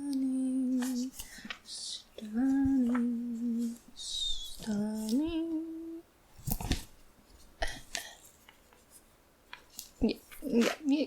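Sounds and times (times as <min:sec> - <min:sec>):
woman humming: 0:00.0 - 0:01.1, 0:01.8 - 0:06.1.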